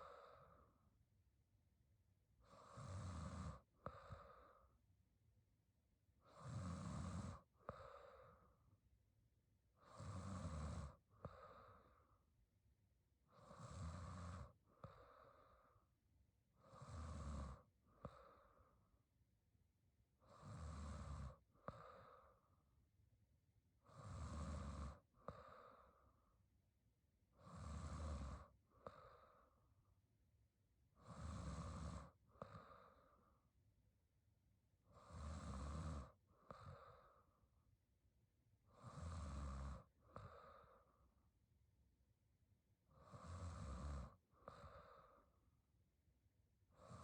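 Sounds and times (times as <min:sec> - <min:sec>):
woman snoring: 0:02.4 - 0:04.7, 0:06.2 - 0:08.4, 0:09.7 - 0:12.0, 0:13.2 - 0:15.6, 0:16.5 - 0:18.8, 0:20.2 - 0:22.4, 0:23.8 - 0:25.9, 0:27.3 - 0:29.2, 0:30.9 - 0:33.0, 0:34.8 - 0:37.3, 0:38.6 - 0:40.7, 0:42.8 - 0:45.5, 0:46.7 - 0:47.0.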